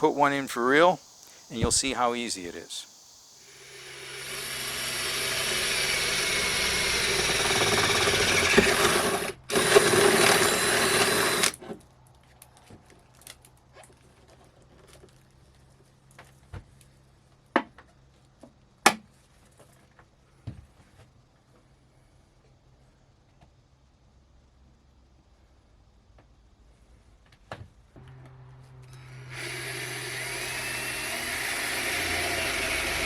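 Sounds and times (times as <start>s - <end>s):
power drill drilling sheet metal: 3.4s - 11.6s, 28.8s - 33.0s.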